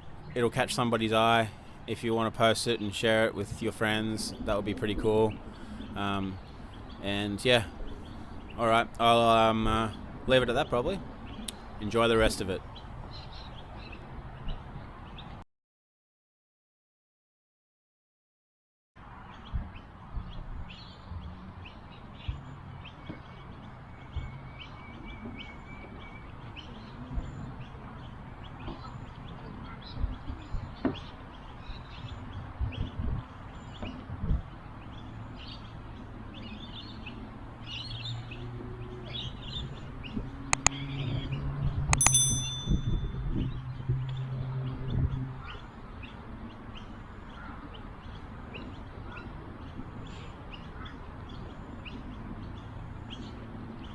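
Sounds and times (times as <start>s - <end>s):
short ringing ding: 42.0s - 43.2s.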